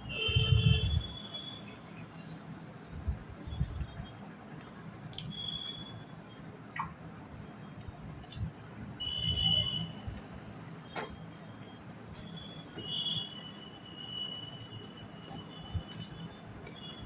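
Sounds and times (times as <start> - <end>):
wet mouth clicks and squishes: 3.6 - 5.9, 6.7 - 7.0, 7.7 - 9.9.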